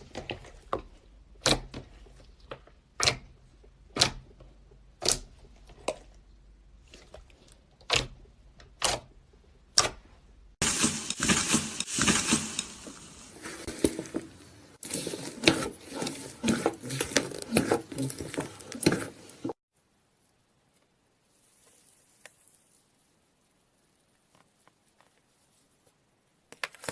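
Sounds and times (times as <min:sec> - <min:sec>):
slime crackling and squishing: 0:04.9 - 0:19.6, 0:21.2 - 0:25.9.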